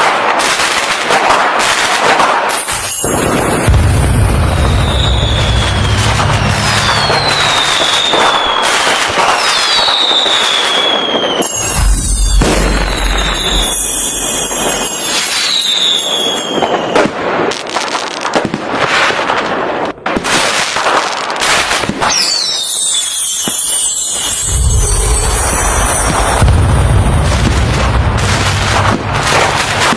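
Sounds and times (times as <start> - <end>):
crackling firework bursts: 0.0 - 29.9
whistling firework shells: 1.0 - 17.2, 20.4 - 29.9
deep firework boom: 2.8 - 9.3, 11.6 - 15.1, 24.3 - 29.9.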